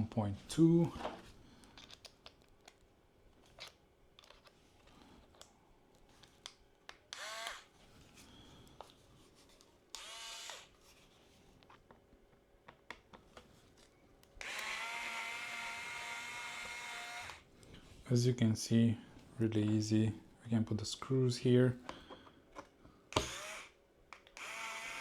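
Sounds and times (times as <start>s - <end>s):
electric screwdriver whirring: 7.1s - 7.7s, 10.0s - 10.7s, 14.4s - 17.4s, 23.2s - 23.8s, 24.4s - 25.0s.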